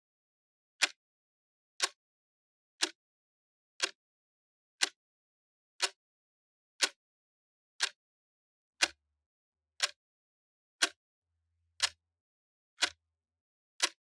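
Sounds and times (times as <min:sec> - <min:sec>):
clock ticking: 0:11.8 - 0:12.0, 0:12.8 - 0:13.0, 0:13.8 - 0:14.0.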